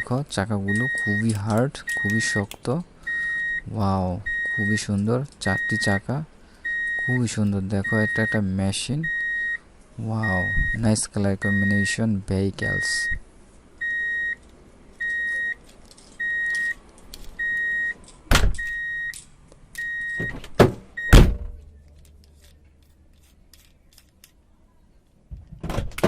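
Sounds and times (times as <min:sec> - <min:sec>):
high electronic beeps: 0:00.7 - 0:01.3, 0:06.7 - 0:08.4, 0:10.2 - 0:11.9, 0:13.8 - 0:14.4, 0:15.0 - 0:15.6, 0:16.2 - 0:16.8.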